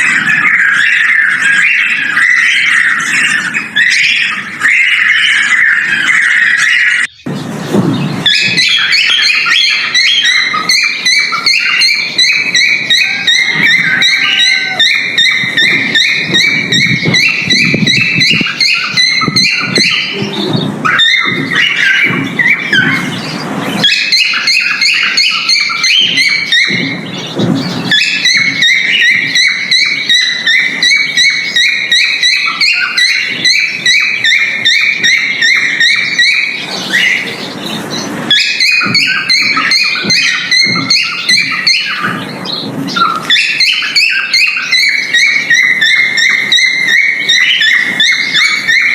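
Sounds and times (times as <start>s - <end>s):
cockatiel chirping whistle notes: 38.3s - 42.3s, 42.9s - 48.9s.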